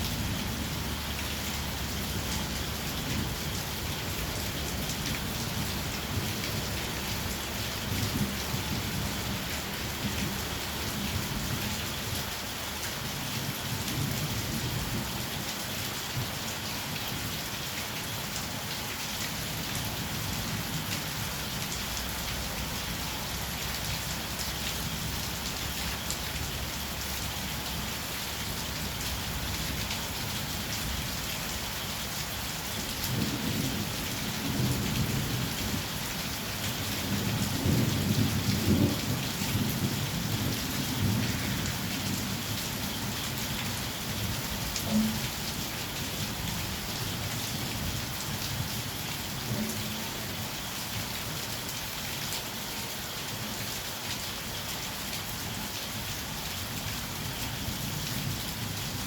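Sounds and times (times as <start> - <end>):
heavy rain pouring: 0.0 - 59.0
low rumble of thunder: 32.8 - 48.8.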